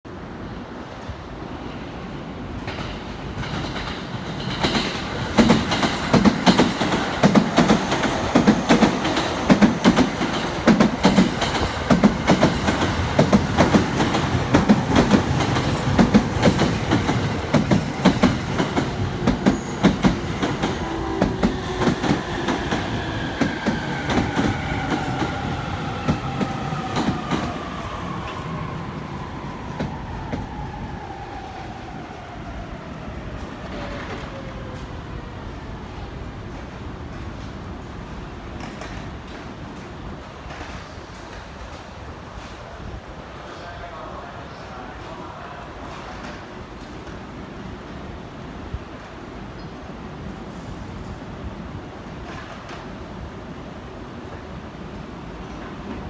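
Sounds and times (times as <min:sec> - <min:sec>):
train wheels clacking over rail joints: 0:02.6 - 0:25.4.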